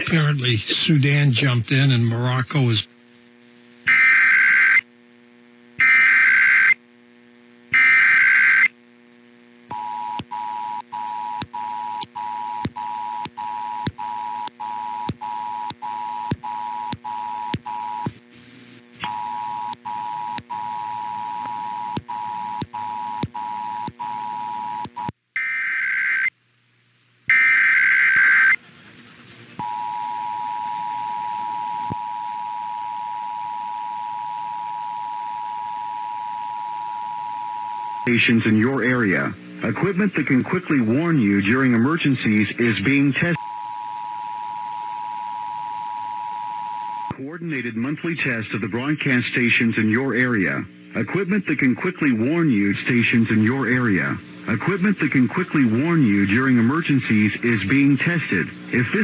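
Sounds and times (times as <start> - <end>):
buzzy data bursts: 0.0 - 4.8, 5.8 - 6.8, 7.7 - 8.7.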